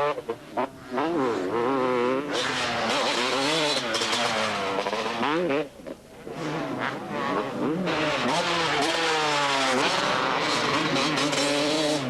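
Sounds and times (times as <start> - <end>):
motocross bike engine revving: 0.0 - 12.0.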